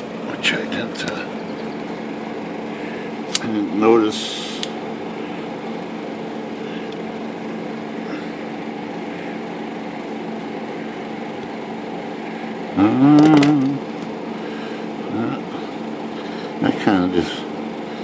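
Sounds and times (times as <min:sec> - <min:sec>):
air conditioner hum: 0:00.0 - 0:18.0
person murmuring: 0:12.7 - 0:13.9, 0:15.0 - 0:15.8.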